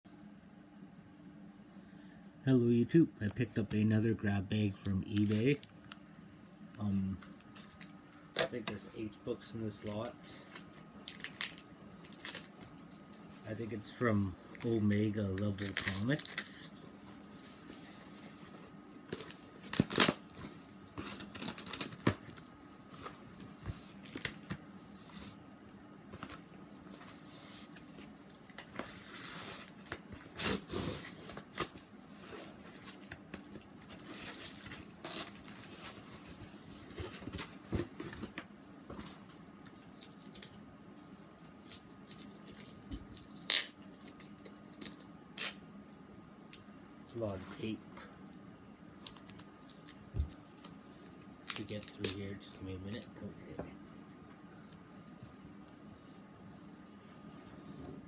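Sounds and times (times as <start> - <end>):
wrapping rustling: 9.0 - 25.4
packing tape peeling and ripping: 9.9 - 12.8, 19.0 - 22.4, 32.7 - 35.9, 41.5 - 45.6, 51.1 - 52.3.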